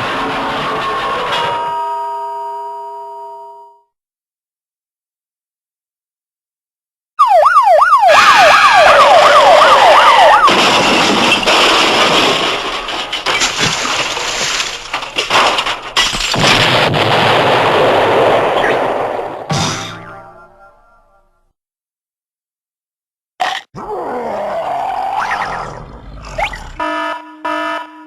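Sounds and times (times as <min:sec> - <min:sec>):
swooping siren-like whistle: 0:07.2 - 0:10.5.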